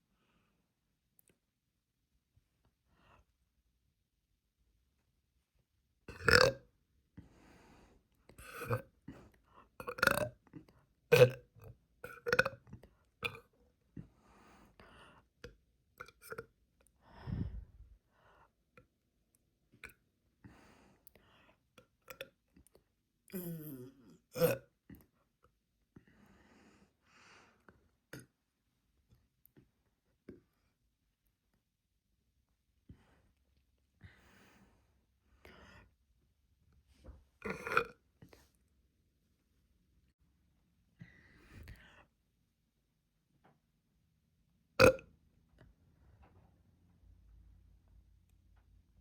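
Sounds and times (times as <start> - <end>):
girl burping: 6.1 - 6.6, 23.3 - 24.7, 37.4 - 38.0.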